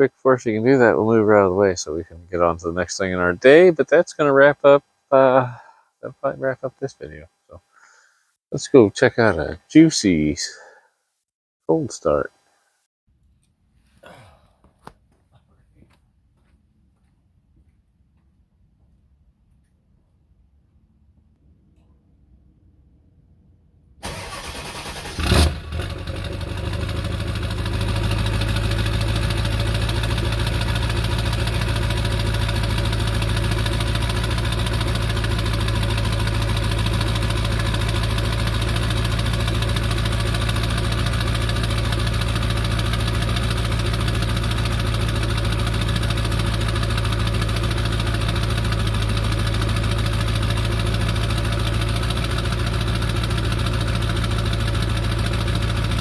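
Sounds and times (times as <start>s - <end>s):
engine bang: 24.0s - 28.6s
diesel engine cranking: 24.0s - 56.0s
diesel engine idling: 24.0s - 56.0s.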